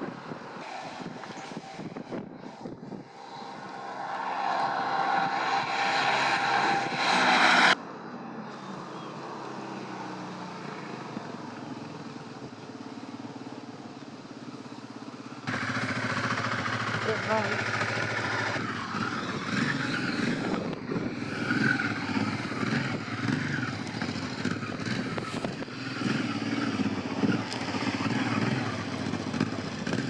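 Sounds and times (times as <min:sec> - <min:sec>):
motorcycle engine running: 0:11.6 - 0:30.0.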